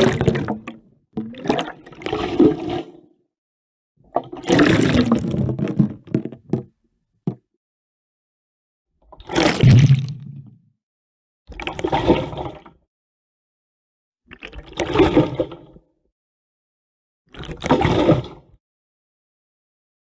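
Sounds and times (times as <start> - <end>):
water sloshing and splashing: 0.0 - 3.0, 4.1 - 6.6, 9.2 - 10.4, 11.5 - 12.7.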